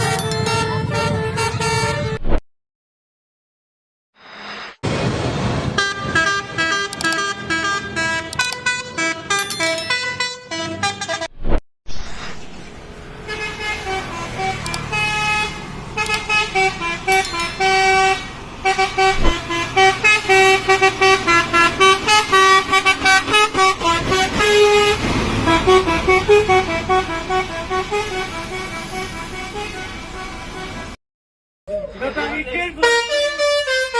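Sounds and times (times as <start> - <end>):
musical bus horn tune: 0.0 - 2.2, 5.8 - 11.3, 13.2 - 31.0, 32.8 - 33.9.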